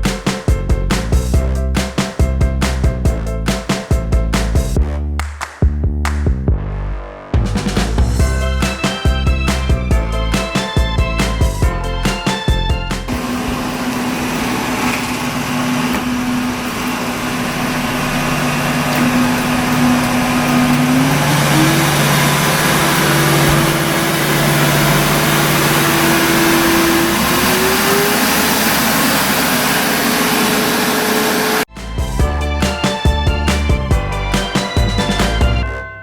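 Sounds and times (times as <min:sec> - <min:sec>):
robot vacuum suction motor: 0:13.2 - 0:31.6.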